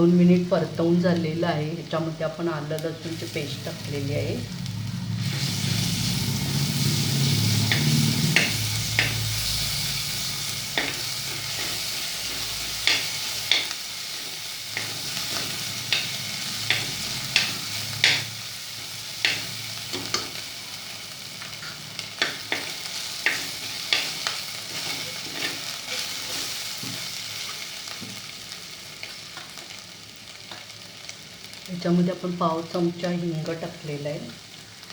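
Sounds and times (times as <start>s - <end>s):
food sizzling in hot oil: 0.1s - 34.9s
utensil scraping pan: 22.5s - 27.1s.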